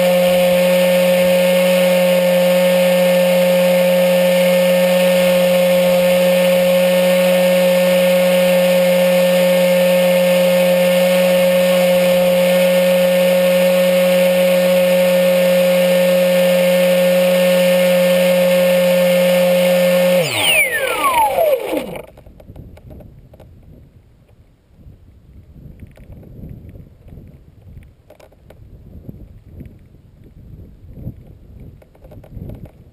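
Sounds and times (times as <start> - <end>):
model plane motor whine: 0.0 - 22.2
faint wind noise: 22.2 - 32.9.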